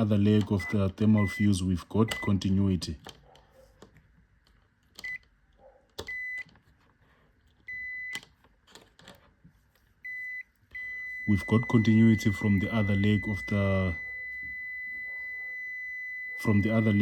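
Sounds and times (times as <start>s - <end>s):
multimeter continuity beeps: 0.0s - 2.8s, 5.0s - 5.3s, 6.0s - 6.5s, 7.7s - 8.2s, 10.0s - 17.0s.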